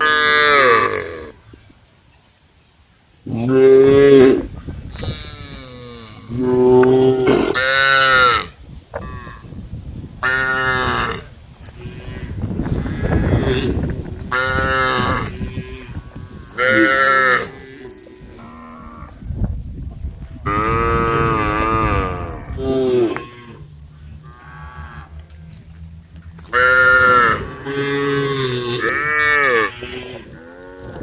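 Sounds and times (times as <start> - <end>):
cattle mooing: 20.5 - 31.0.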